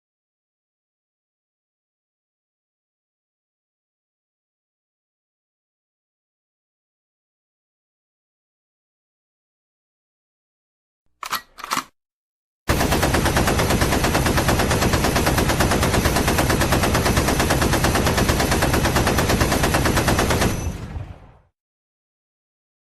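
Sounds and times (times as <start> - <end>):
machine gun automatic fire: 11.2 - 11.9, 12.7 - 21.2.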